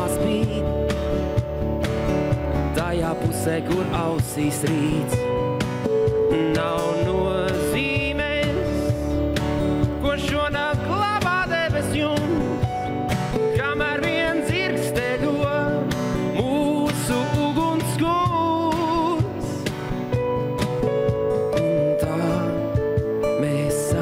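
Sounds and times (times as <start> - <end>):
person singing: 0.0 - 0.9, 2.7 - 5.3, 6.1 - 9.2, 9.9 - 19.7, 21.5 - 24.0
acoustic guitar: 0.0 - 24.0.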